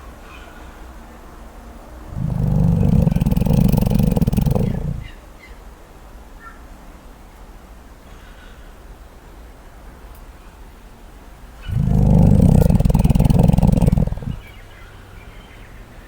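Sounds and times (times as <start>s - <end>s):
koala deep rasping snore: 2.1s - 5.1s, 11.6s - 14.5s.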